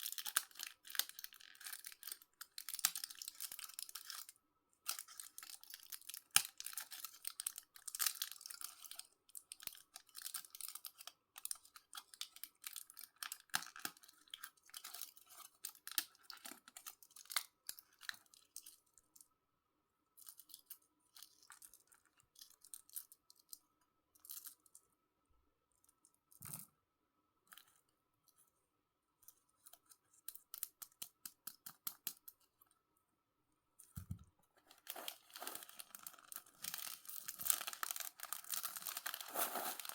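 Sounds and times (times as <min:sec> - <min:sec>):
sweet wrappers crinkling and tearing: 0:00.0 - 0:18.7, 0:34.7 - 0:39.9.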